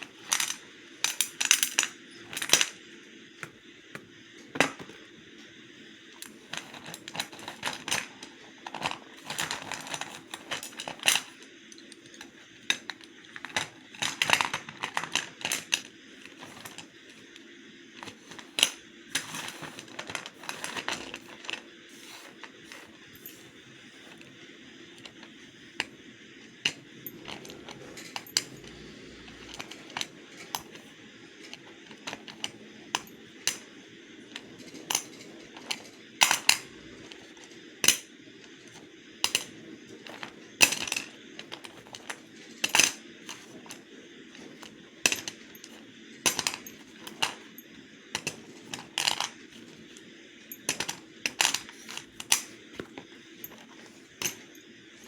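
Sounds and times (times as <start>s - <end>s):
slate pencils clicking and snapping: 0.0s - 2.8s, 6.2s - 25.9s, 26.5s - 33.7s, 34.3s - 55.0s.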